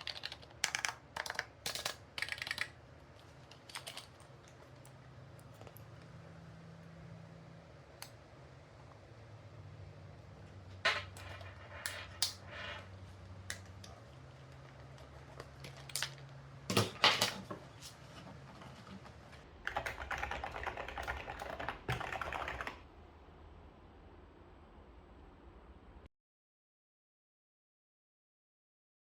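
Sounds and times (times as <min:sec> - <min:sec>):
keyboard typing: 0:00.0 - 0:06.1, 0:19.6 - 0:22.8.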